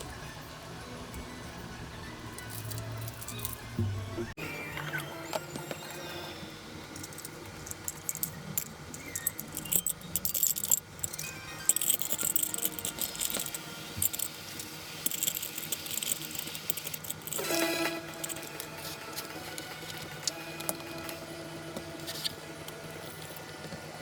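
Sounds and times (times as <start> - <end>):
background music: 0.0 - 24.0
small hard objects clinking: 6.8 - 21.0.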